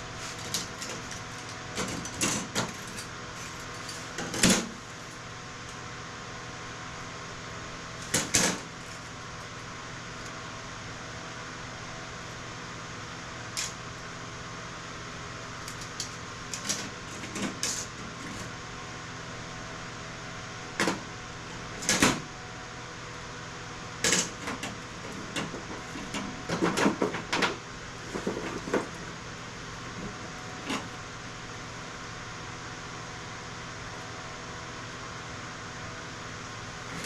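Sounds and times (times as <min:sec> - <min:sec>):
steady fan hum: 0:00.0 - 0:37.0.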